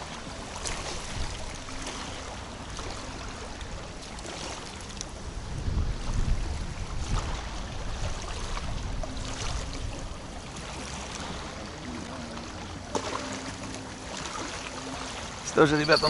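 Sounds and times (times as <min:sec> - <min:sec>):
small waves lapping: 0:00.0 - 0:16.0
wind buffeting microphone: 0:05.1 - 0:10.6.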